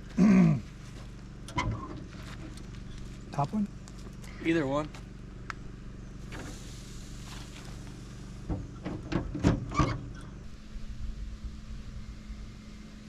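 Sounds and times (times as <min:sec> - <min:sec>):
steady low hum: 0:00.0 - 0:13.0
knocks and clatter: 0:08.5 - 0:10.1.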